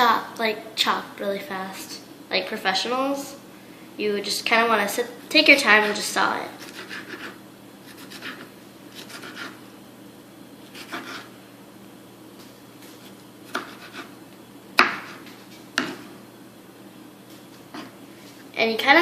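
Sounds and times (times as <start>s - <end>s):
knife sawing through tomato: 6.6s - 9.6s, 10.7s - 11.3s, 13.5s - 14.2s.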